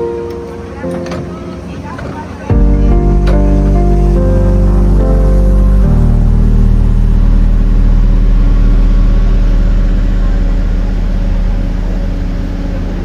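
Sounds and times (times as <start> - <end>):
vehicle engine humming: 0.0 - 13.0.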